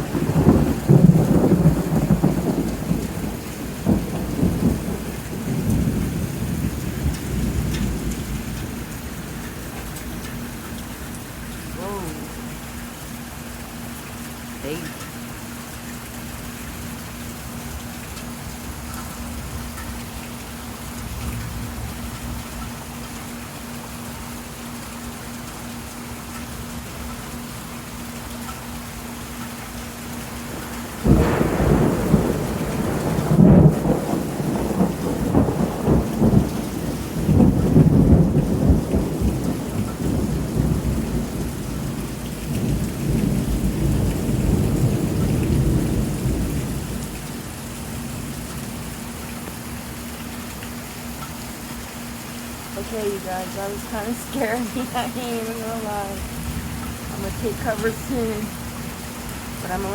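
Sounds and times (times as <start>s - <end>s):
thunder rumbling: 0.0s - 12.8s, 30.4s - 49.0s, 52.7s - 59.9s
steady rain: 0.0s - 59.9s.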